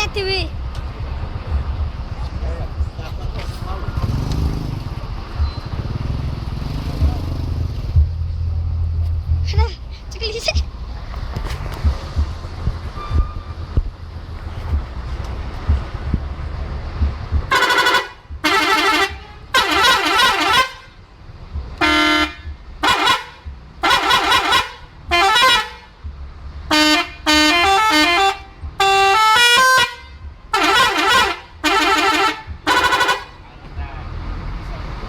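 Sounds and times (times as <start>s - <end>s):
musical bus horn blasts: 17.5s - 21.0s, 21.8s - 26.0s, 26.7s - 33.4s.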